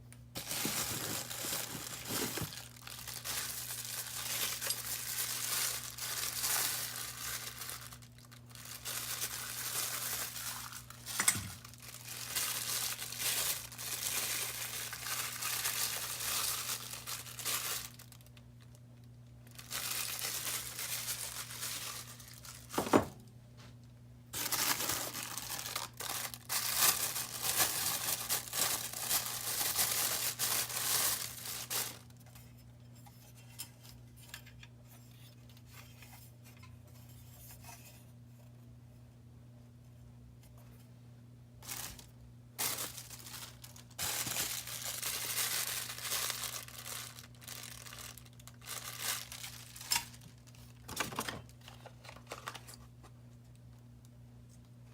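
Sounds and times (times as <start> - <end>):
packing material crinkling and tearing: 0.3 - 23.1, 24.3 - 32.4, 41.6 - 52.9.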